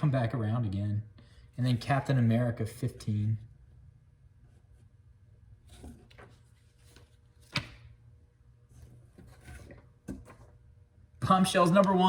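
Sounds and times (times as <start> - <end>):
comic books rustling and sliding: 5.7 - 7.8, 8.7 - 10.6.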